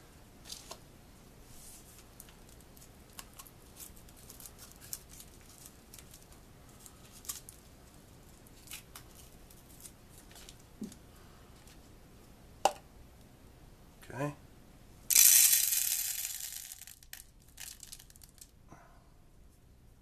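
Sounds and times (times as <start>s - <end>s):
hands handling firework shell: 15.1s - 18.5s.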